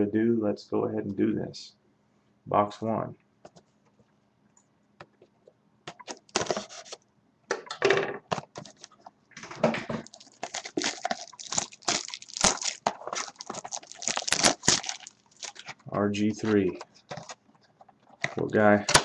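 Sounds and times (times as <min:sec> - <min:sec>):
plastic wrapping tearing and crinkling: 0:08.4 - 0:08.9, 0:10.0 - 0:15.9.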